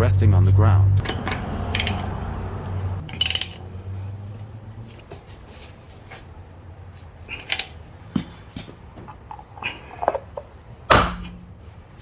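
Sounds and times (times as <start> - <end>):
metallic clinks of tools: 1.1 - 2.2, 3.0 - 3.7, 7.4 - 7.8.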